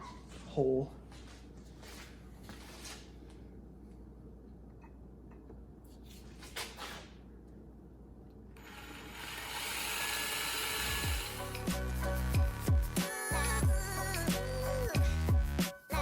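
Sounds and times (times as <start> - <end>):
power drill boring a hole: 8.6 - 11.7
hip-hop music with deep bass: 11.4 - 16.0.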